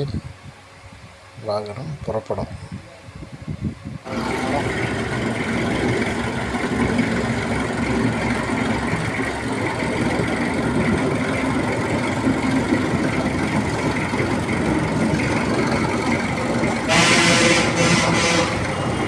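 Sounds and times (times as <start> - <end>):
road roller engine idling: 4.1 - 19.0.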